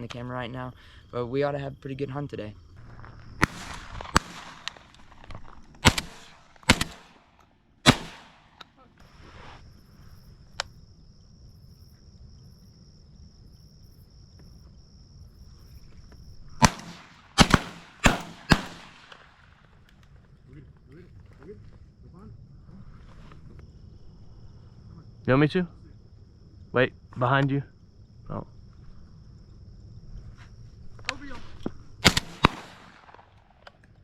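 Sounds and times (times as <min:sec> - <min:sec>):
echoing shotgun shots: 0:03.4 - 0:08.9, 0:16.6 - 0:19.8, 0:32.0 - 0:33.8
high insect buzz: 0:08.3 - 0:19.3, 0:20.9 - 0:33.6.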